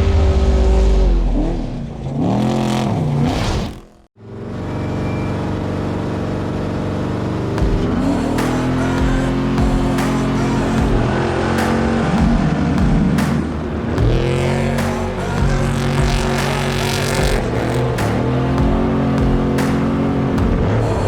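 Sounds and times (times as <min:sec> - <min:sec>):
race vehicle engine revving: 0:04.2 - 0:21.0.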